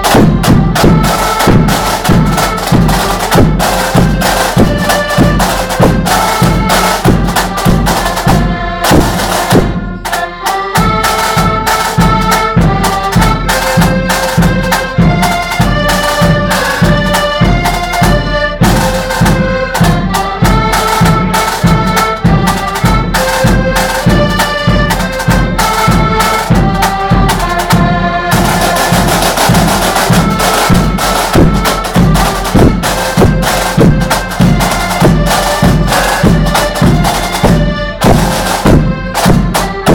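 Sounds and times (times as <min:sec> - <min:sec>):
accordions playing melody: 0:00.0 - 0:39.9
snare and bass drums: 0:00.0 - 0:39.9.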